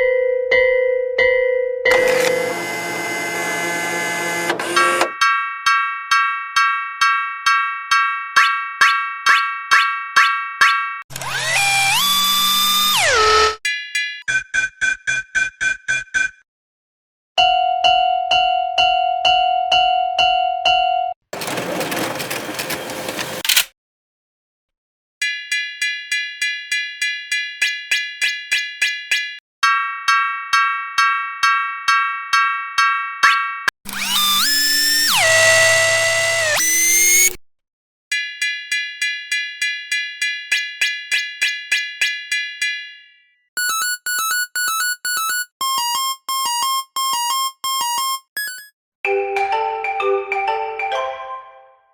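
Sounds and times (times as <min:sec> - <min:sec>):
electronic melody notes: 0:43.6 - 0:48.7.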